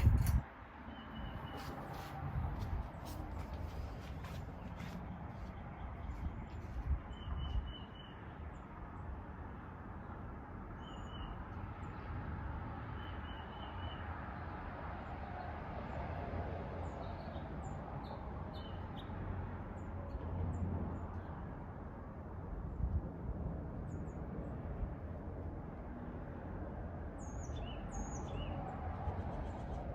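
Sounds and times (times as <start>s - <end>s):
small birds chirping: 4.2s - 8.7s.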